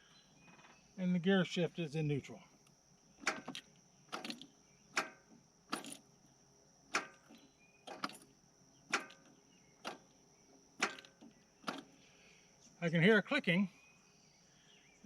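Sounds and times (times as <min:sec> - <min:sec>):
tractor starter clicking: 0:03.2 - 0:06.0, 0:06.9 - 0:08.3, 0:08.9 - 0:10.2, 0:10.8 - 0:11.9.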